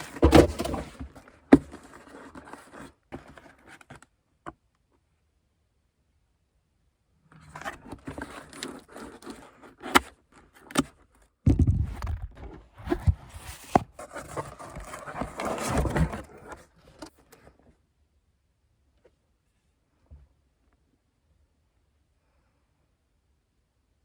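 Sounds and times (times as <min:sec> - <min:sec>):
packaging scraping and rustling: 0:00.0 - 0:04.0, 0:07.4 - 0:10.9, 0:12.8 - 0:17.2.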